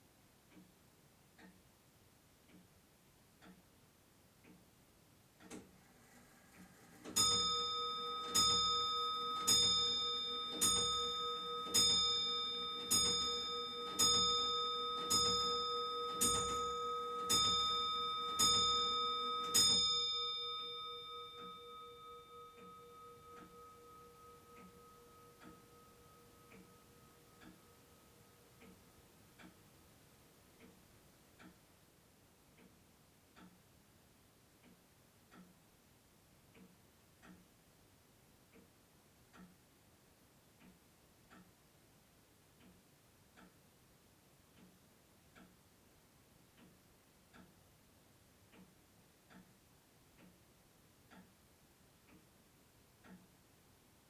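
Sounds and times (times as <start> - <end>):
clock ticking faintly: 0.4 - 54.0
clock chime strokes: 7.1 - 28.4.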